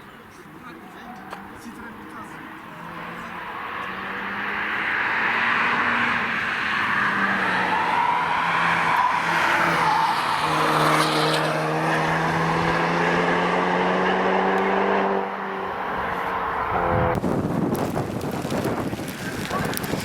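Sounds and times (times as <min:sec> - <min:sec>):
car engine: 0:00.0 - 0:20.0
tyres hissing on wet road: 0:17.8 - 0:20.0.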